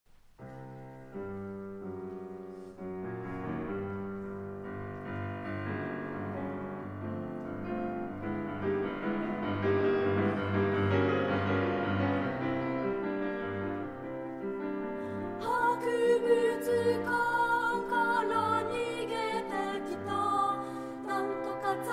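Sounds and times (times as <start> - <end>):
piano playing chords: 0.4 - 21.9.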